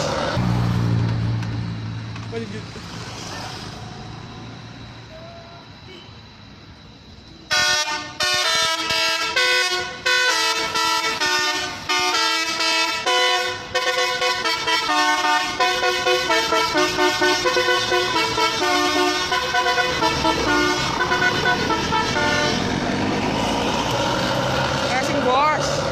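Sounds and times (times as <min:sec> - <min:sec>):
musical air horn playing a tune: 0:07.5 - 0:22.7.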